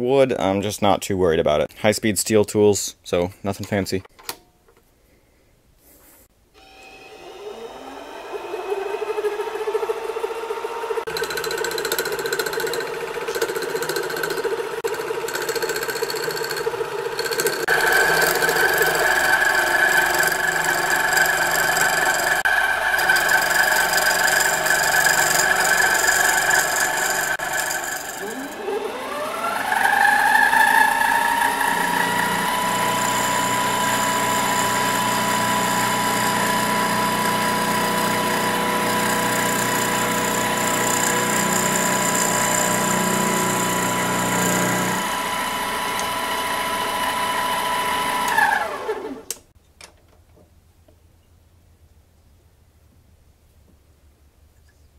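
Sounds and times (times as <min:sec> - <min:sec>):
lathe motor whining: 0:06.6 - 0:49.4.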